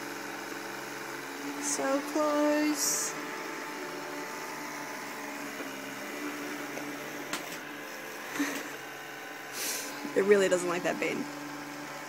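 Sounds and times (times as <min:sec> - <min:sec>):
robot vacuum whirring: 0:00.8 - 0:12.0.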